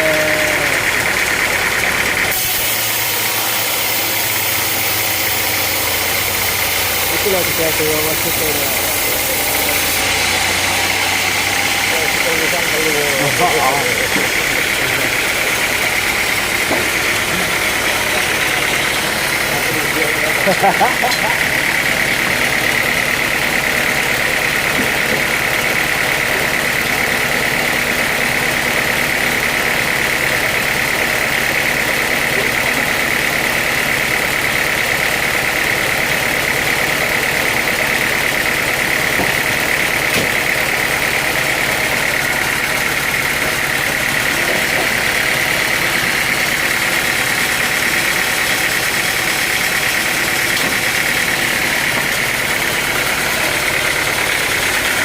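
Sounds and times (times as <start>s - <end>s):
high machine whine: 0.0s - 55.0s
sawmill engine running: 0.0s - 55.0s.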